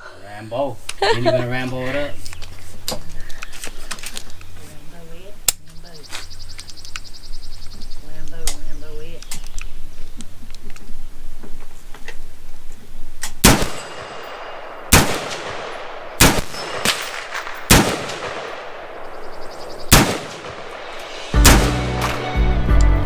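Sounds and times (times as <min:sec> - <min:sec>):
gunshots with echo: 0:13.4 - 0:22.3
music: 0:21.3 - 0:23.0.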